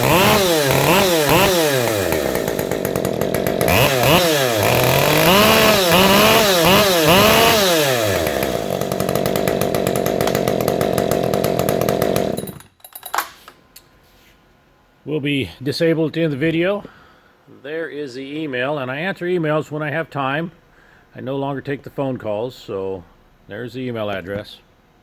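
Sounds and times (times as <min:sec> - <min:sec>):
chainsaw revving and idling: 0:00.0 - 0:12.6.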